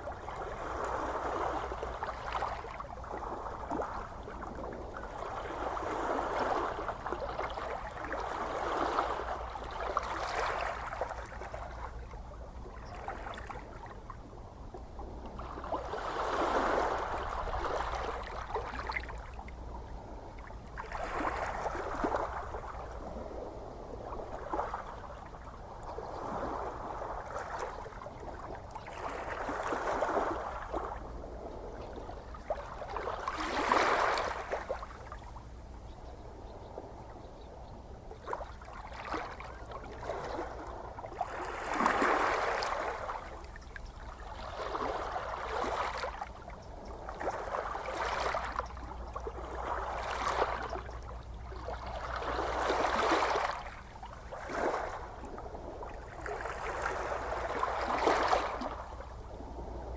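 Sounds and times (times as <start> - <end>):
ocean waves washing in: 47.1 - 59.9.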